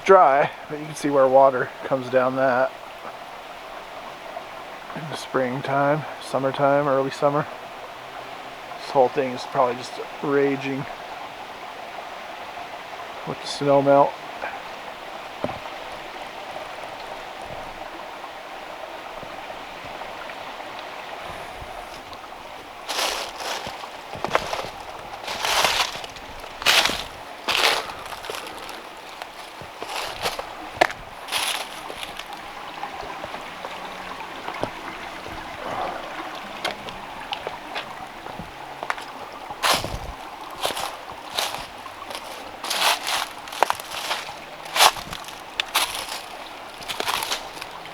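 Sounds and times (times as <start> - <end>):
creek water rushing over rocks: 0.0 - 47.9
footsteps on rocky ground: 22.9 - 33.8, 34.4 - 35.7, 36.6 - 47.9.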